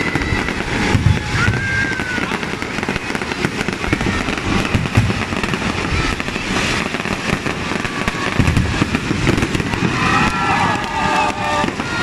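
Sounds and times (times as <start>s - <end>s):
fireworks crackling and popping: 0.0s - 12.0s
loud firework bang: 0.0s - 12.0s.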